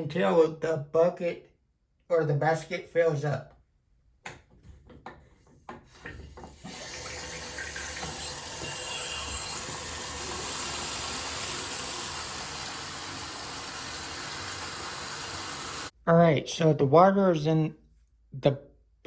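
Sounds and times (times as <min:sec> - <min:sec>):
tap running water: 0:05.7 - 0:15.9.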